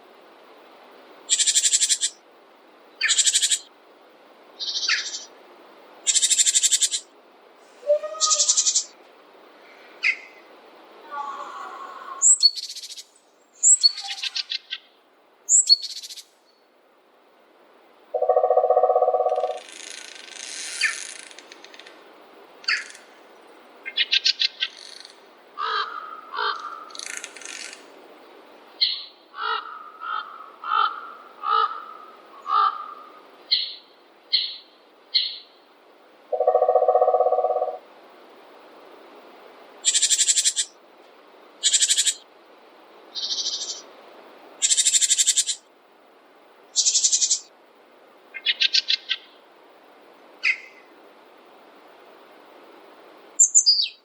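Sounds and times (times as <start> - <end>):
faint background hiss: 0.0 - 54.0
birds chirping and trilling: 4.6 - 5.3, 7.9 - 9.0, 12.2 - 14.9, 18.2 - 19.7, 28.8 - 35.6, 43.2 - 43.9, 46.8 - 47.5, 50.4 - 50.8, 53.4 - 54.0
low long bird call: 7.7 - 9.0, 18.2 - 19.6, 36.3 - 37.8.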